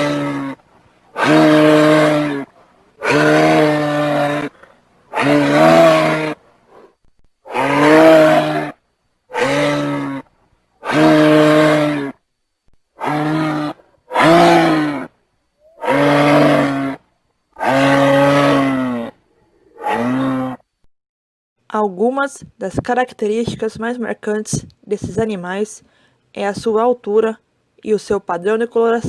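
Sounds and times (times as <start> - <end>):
giraffe calling: 0.0 - 0.6, 1.2 - 6.4, 7.4 - 10.2, 10.8 - 12.1, 13.0 - 17.0, 17.6 - 19.1.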